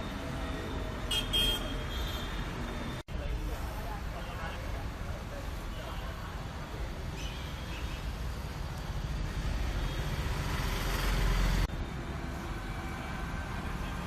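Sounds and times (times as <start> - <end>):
road traffic rumble: 0.0 - 14.0.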